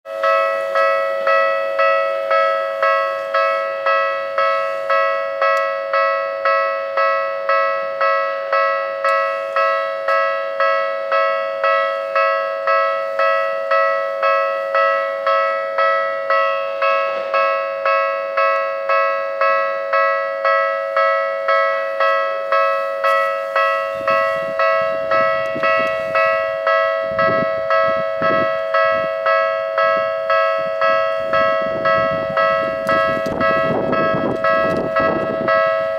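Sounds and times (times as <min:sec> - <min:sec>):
level-crossing alarm bell: 0:00.1 - 0:35.9
train rumble and wheel clatter: 0:00.2 - 0:35.9.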